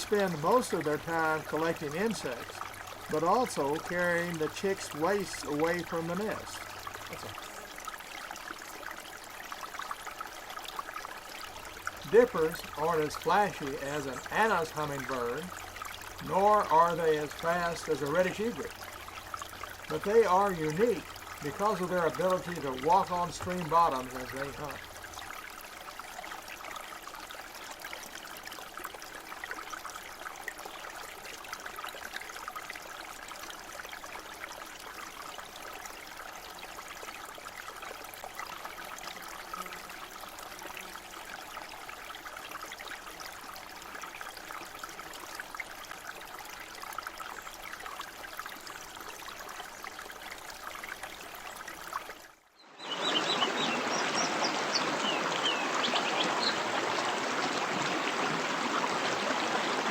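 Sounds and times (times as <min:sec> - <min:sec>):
stream rushing over rocks: 0:00.0 - 0:59.9.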